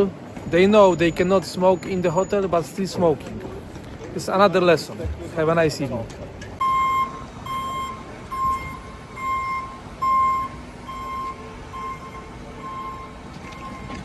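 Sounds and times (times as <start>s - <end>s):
vehicle reversing alarm beeping: 6.6s - 14.0s.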